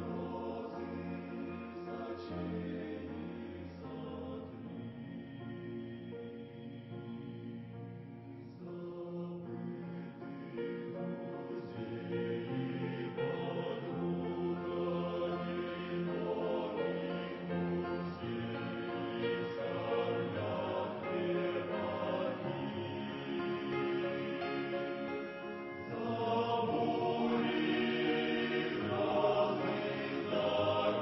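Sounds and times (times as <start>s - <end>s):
choir singing a hymn: 0.0s - 31.0s.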